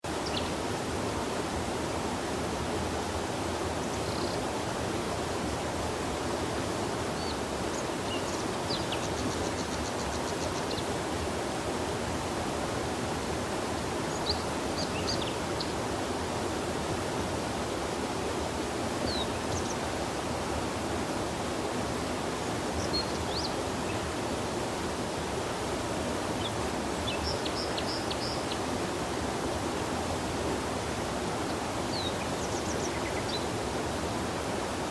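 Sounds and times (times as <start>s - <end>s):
river water rushing: 0.1s - 34.9s
small birds chirping: 26.4s - 28.7s, 31.5s - 33.5s.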